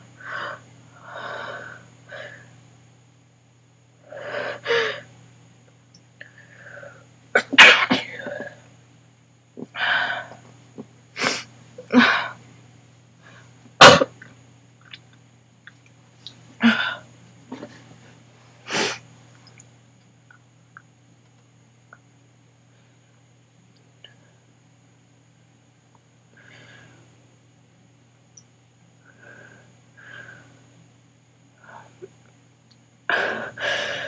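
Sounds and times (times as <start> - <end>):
woman sneezing: 7.4 - 8.4, 11.2 - 11.4, 18.7 - 19.0
breathy intake: 18.7 - 19.0.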